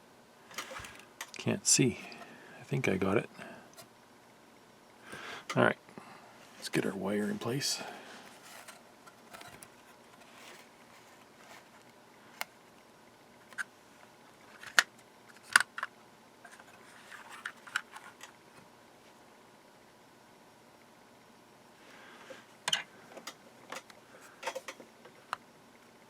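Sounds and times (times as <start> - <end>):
small tools clicking and tapping: 23.2 - 24.8.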